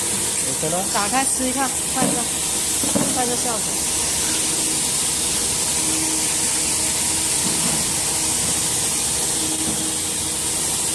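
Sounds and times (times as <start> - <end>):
hot-air blower hissing: 0.0 - 10.9.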